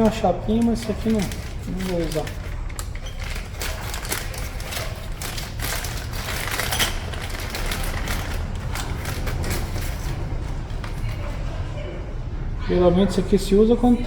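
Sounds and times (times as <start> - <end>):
small metal parts clicking: 0.0 - 10.2.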